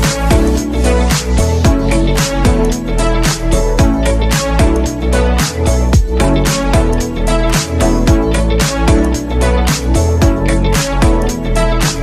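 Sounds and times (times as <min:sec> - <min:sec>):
electronic dance music: 0:00.0 - 0:12.0.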